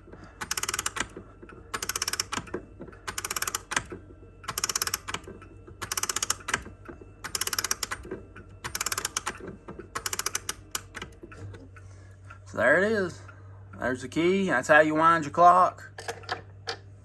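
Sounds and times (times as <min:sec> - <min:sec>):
winding ratchet clicking: 0:00.4 - 0:01.1, 0:01.7 - 0:02.4, 0:03.1 - 0:03.8, 0:04.5 - 0:05.2, 0:05.8 - 0:06.6, 0:07.2 - 0:08.0, 0:08.6 - 0:09.4, 0:10.0 - 0:11.1.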